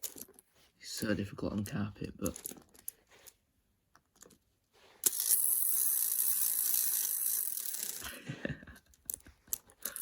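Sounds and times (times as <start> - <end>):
wind-up toy mechanism whirring: 5.0 - 8.1.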